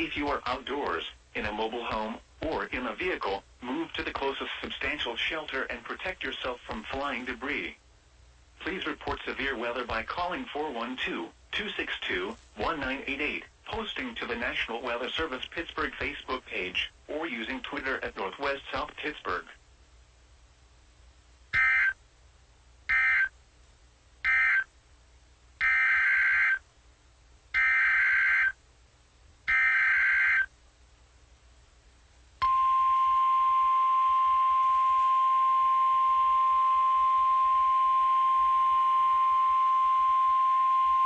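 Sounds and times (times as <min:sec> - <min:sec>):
steady alarm tone: 0:21.6 - 0:22.0, 0:22.9 - 0:23.3, 0:24.3 - 0:24.7, 0:25.6 - 0:26.6, 0:27.6 - 0:28.6, 0:29.5 - 0:30.5, 0:32.4 - 0:41.0.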